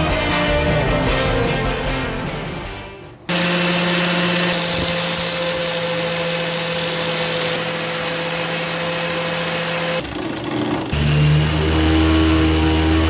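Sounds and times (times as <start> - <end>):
power tool motor hum: 3.3 - 13.0.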